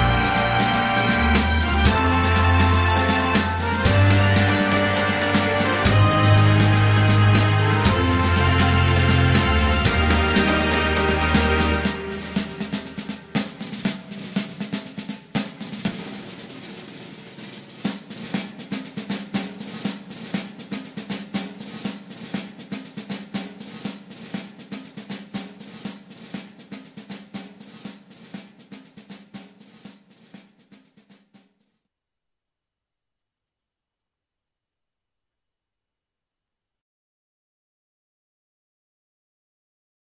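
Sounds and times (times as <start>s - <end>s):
music with fast drum beat: 0.0s - 31.8s.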